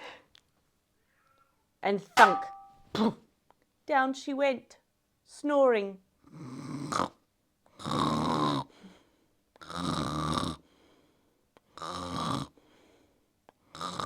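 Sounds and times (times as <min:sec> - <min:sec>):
person snoring: 0:07.8 - 0:08.7, 0:09.6 - 0:10.6, 0:11.8 - 0:12.6, 0:13.7 - 0:14.0.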